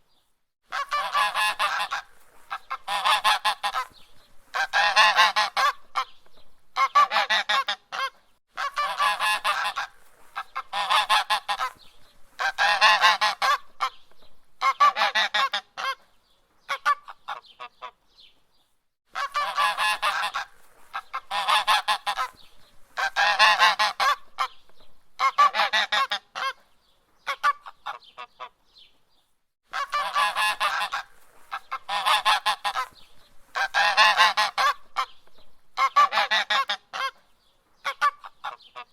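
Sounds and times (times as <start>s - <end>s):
goose honking: 0.7s - 3.9s, 4.5s - 6.1s, 6.8s - 11.8s, 12.4s - 14.0s, 14.6s - 16.0s, 19.1s - 22.4s, 23.0s - 24.6s, 25.2s - 26.6s, 29.7s - 35.1s, 35.8s - 37.2s.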